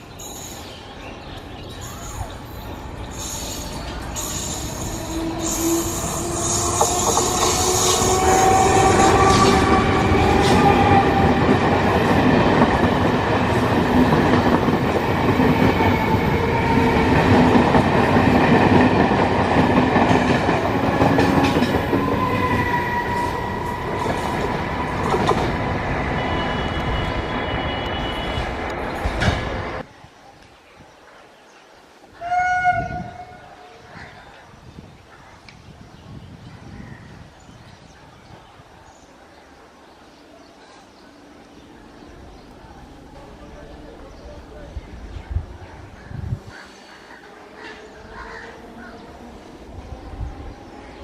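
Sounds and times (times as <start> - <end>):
train wheels rumbling on rails: 1.8 - 29.9.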